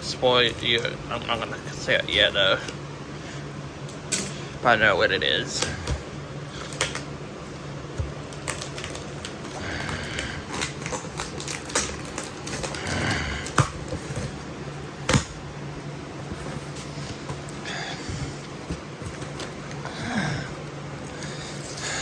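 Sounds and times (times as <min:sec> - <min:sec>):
low steady hum: 0:00.0 - 0:22.0
package rustling: 0:08.1 - 0:20.2.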